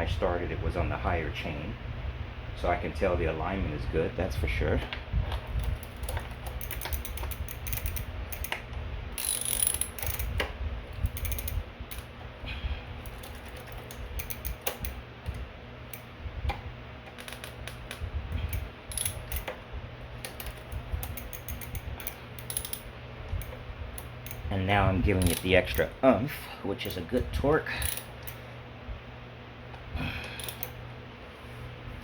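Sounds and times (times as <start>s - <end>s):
ratchet wrench clicking: 5.6s - 8.6s, 9.2s - 12.1s, 13.0s - 16.1s, 17.1s - 19.6s, 20.2s - 24.5s, 25.1s - 25.9s, 27.8s - 28.4s, 30.4s - 30.8s.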